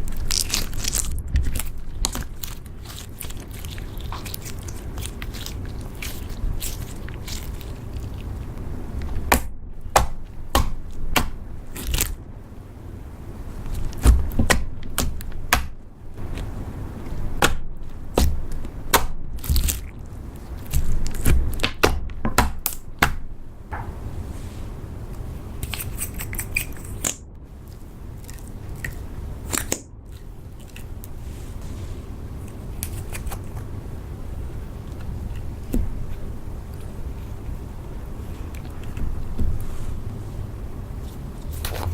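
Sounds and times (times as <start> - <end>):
slime squished by hand: 0.0 - 12.2.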